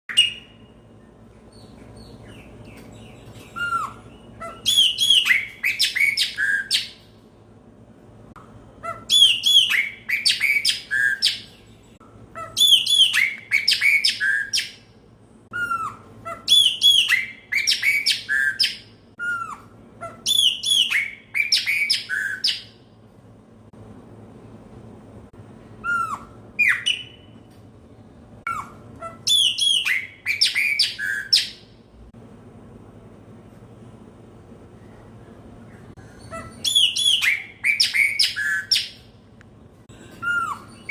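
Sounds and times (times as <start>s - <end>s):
blackbird singing: 0.1s - 7.1s, 8.8s - 14.9s, 15.5s - 22.8s, 25.8s - 27.4s, 28.5s - 31.8s, 35.6s - 39.1s, 40.2s - 40.9s.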